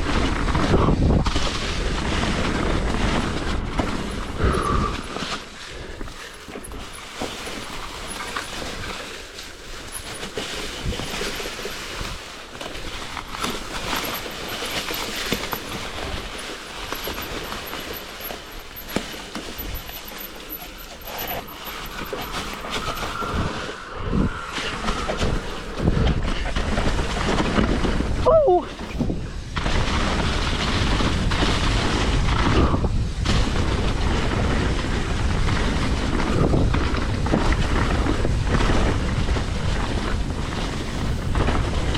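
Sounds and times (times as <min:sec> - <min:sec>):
bike frame and chain rattling: 0:00.0 - 0:23.6, 0:33.3 - 0:41.9
bike tyres crunching over dirt: 0:00.0 - 0:41.9.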